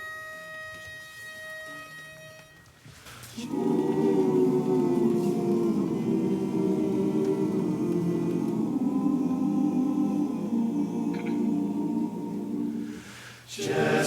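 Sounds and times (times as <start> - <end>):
male barbershop chorus singing: 3.4 - 14.0.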